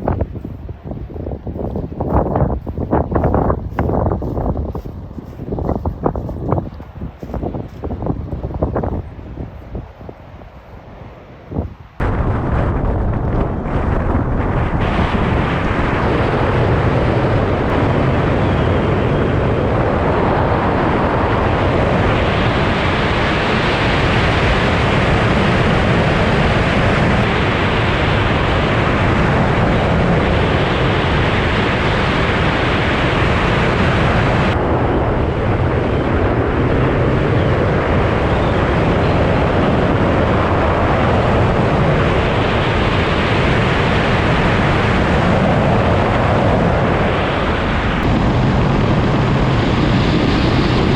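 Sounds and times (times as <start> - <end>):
strong wind buffeting microphone: 0.0 - 50.9.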